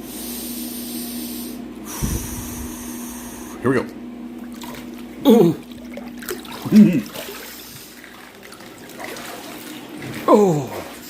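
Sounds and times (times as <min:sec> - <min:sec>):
person groaning: 0:05.2 - 0:05.6.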